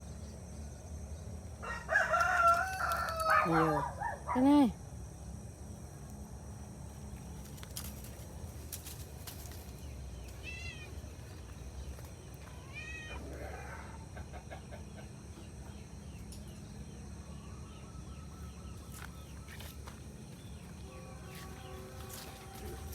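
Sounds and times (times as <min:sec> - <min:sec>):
low outdoor rumble: 0:00.0 - 0:22.9
cat meowing: 0:12.6 - 0:13.3.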